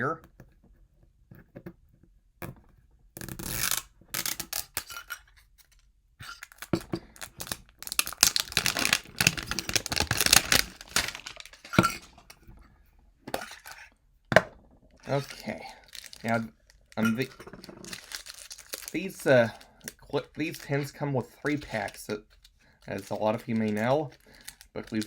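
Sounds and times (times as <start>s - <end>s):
plastic wrapping tearing: 3.2s - 5.1s, 6.3s - 12.4s, 15.0s - 25.0s
metal tin clinks and scrapes: 4.7s - 5.4s, 8.4s - 12.4s, 13.3s - 13.9s, 17.0s - 18.9s.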